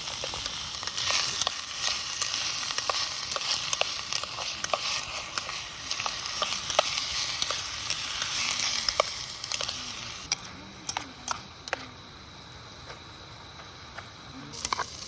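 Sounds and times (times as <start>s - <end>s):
food sizzling in a hot pan: 0.0s - 10.3s, 14.5s - 15.0s
utensils clicking and tapping: 0.0s - 11.9s, 14.5s - 15.0s.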